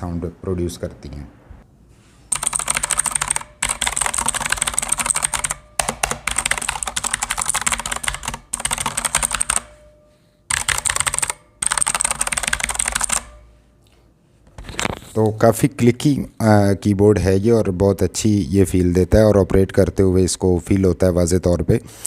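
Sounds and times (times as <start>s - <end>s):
clicky mechanical keyboard typing: 2.3s - 9.8s, 10.5s - 13.4s.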